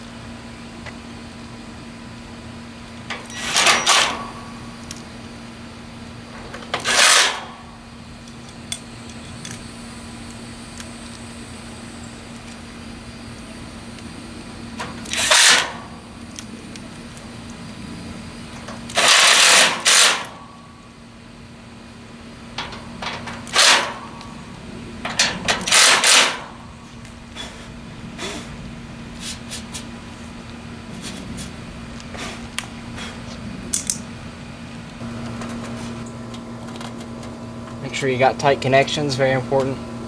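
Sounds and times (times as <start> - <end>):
steady low hum: 0.0 - 40.0
cordless drill driving screws: 6.8 - 7.4, 15.1 - 15.7, 18.9 - 20.3, 23.5 - 23.9, 25.6 - 26.4.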